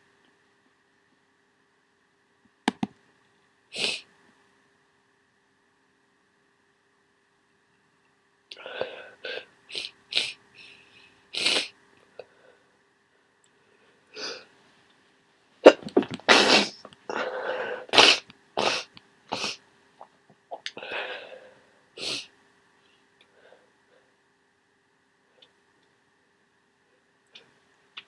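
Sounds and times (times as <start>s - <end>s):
person sneezing: 15.6s - 16.8s, 17.8s - 19.6s.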